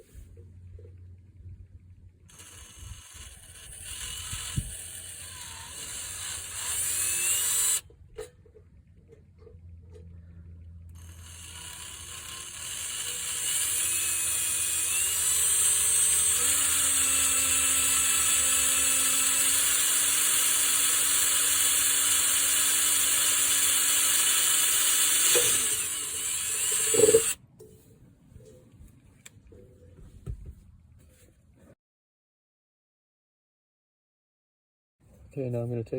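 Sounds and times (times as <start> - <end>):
drill bit grinding into metal: 2.3 - 7.8, 11.0 - 27.4
drill motor whine: 2.3 - 7.8, 11.0 - 27.4.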